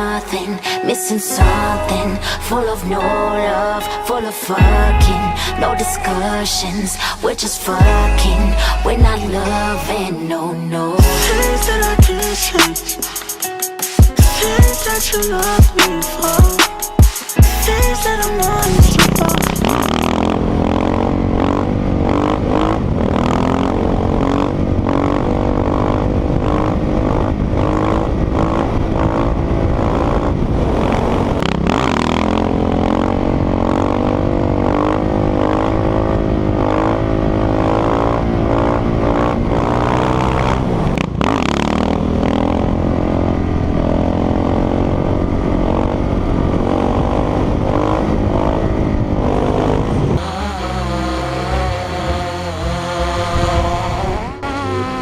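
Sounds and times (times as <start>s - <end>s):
motorcycle engine revving: 14.3s - 55.0s.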